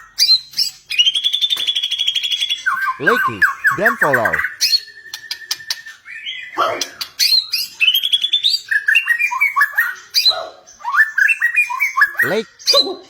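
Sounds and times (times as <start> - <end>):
bird singing varied song: 0.0 - 6.6.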